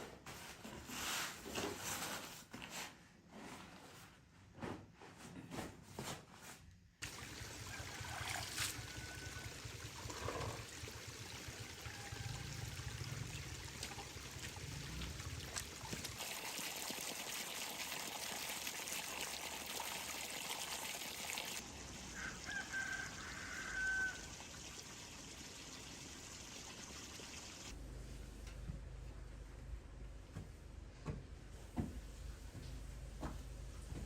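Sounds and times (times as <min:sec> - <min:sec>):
water trickling: 0:07.0 - 0:27.7.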